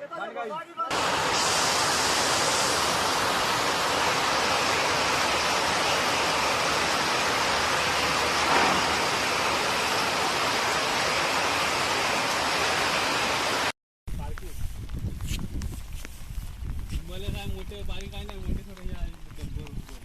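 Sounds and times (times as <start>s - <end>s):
floodwater rushing: 0.9s - 13.7s.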